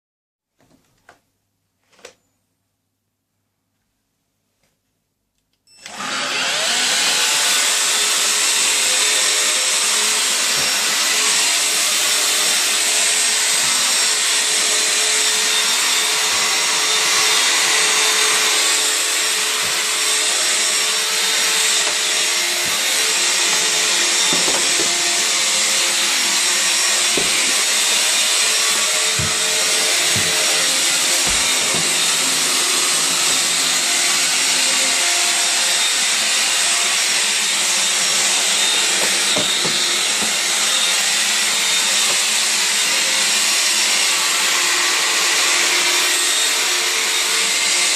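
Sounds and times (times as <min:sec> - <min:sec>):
stick vacuum motor running: 0:05.8 - 0:42.8.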